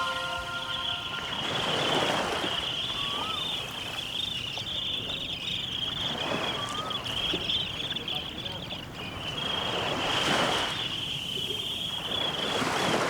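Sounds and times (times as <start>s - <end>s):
high-pitched insect drone: 0.0s - 6.7s
short whistled calls: 0.0s - 12.6s.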